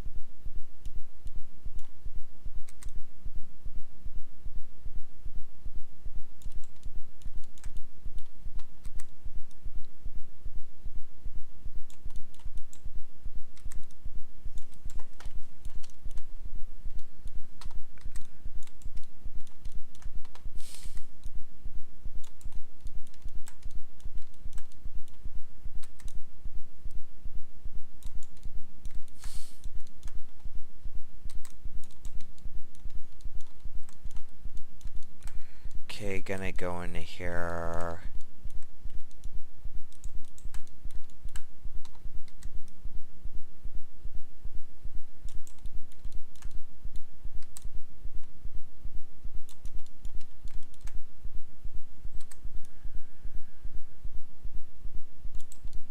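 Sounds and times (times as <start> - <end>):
low throbbing pulse: 0.0 - 7.1, 9.2 - 11.9, 21.2 - 29.0, 30.4 - 31.8, 38.0 - 55.8
mouse clicks: 2.6 - 3.0, 6.4 - 9.9, 45.3 - 48.3, 52.1 - 52.8, 55.3 - 55.8
brief hisses: 20.6 - 21.1, 29.2 - 29.6
keyboard keystrokes: 52.2 - 52.4.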